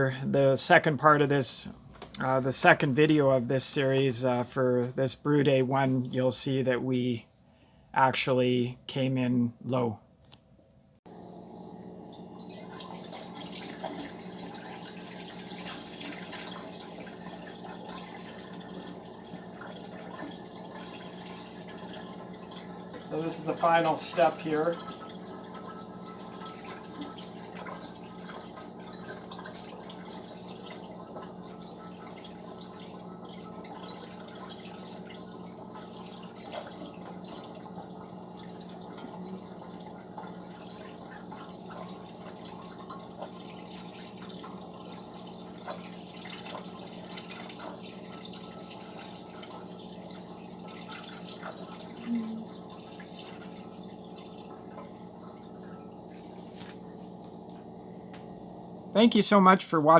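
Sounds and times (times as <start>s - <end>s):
liquid dripping and trickling: 12.0s - 58.9s.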